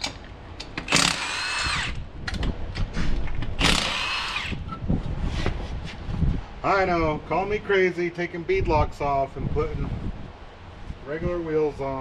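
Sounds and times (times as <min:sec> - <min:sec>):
impact wrench whining: 0:00.0 - 0:02.4, 0:03.5 - 0:04.8.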